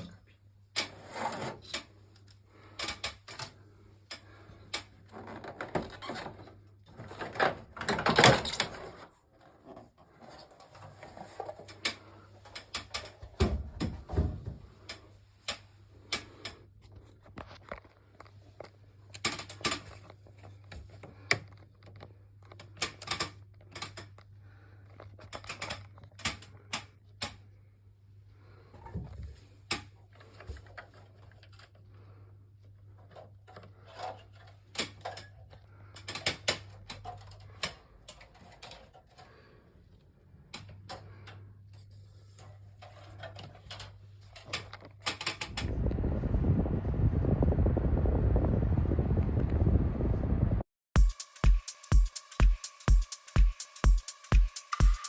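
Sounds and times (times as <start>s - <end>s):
hard parts clicking and knocking: 0.0s - 27.6s, 32.6s - 45.7s
steady low hum: 45.4s - 51.1s.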